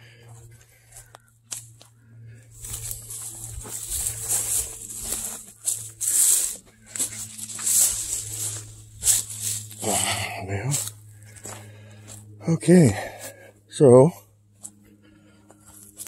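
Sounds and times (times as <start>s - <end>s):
low hum: 0.0s - 16.0s
dry leaves rustling and crunching: 2.5s - 12.2s.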